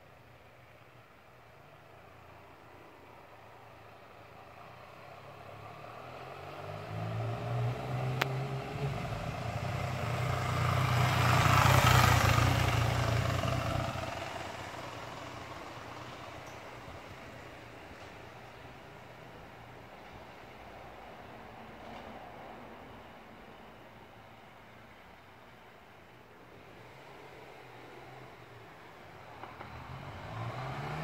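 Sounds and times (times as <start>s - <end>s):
vehicle passing by: 4.7s - 16.3s, 26.7s - 31.0s.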